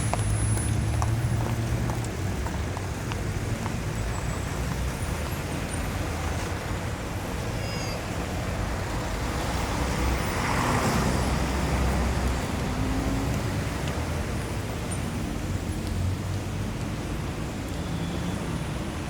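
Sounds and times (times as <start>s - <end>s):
city traffic hum: 0.0s - 19.0s.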